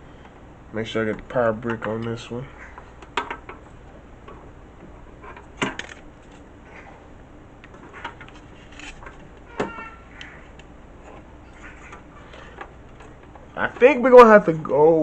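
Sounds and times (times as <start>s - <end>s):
clicks of cable and hard drive handling: 5.3s - 6.4s.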